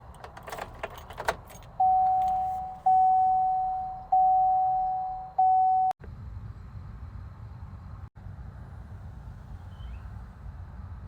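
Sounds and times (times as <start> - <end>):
keys jingling: 0.0 - 2.8
warning chime dings: 1.8 - 6.0.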